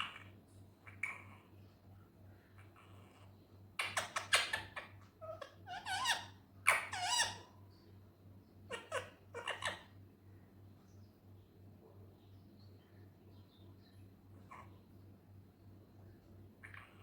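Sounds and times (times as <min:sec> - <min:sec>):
parrot calling and chattering: 0:03.8 - 0:07.6, 0:08.7 - 0:10.0.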